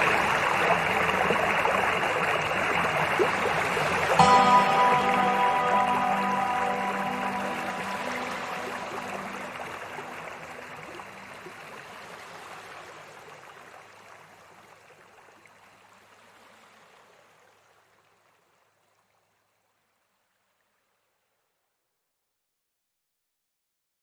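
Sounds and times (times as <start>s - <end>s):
soft music: 0.0s - 12.0s
river water rushing: 0.0s - 14.0s.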